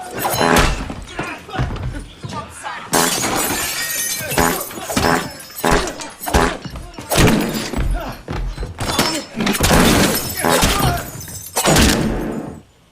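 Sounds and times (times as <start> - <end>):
fight thuds and crashes: 0.0 - 2.2, 3.0 - 12.6
comedic fart sounds: 0.2 - 0.9, 4.4 - 6.6.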